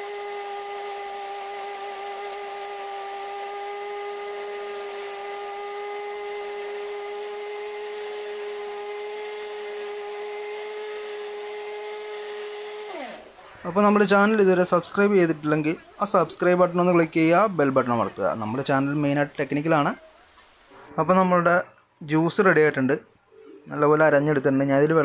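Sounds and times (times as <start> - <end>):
mixer grinder running: 0.0 - 17.4.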